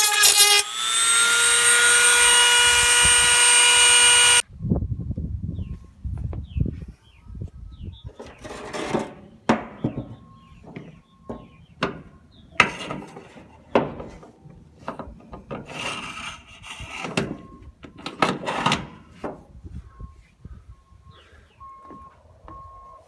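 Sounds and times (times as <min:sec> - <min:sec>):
scraping and rubbing: 0:08.2 - 0:09.2, 0:15.5 - 0:17.4.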